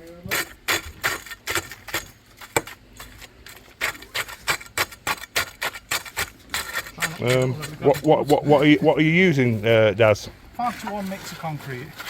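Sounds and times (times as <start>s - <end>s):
concrete being rammed down: 0.3s - 8.4s.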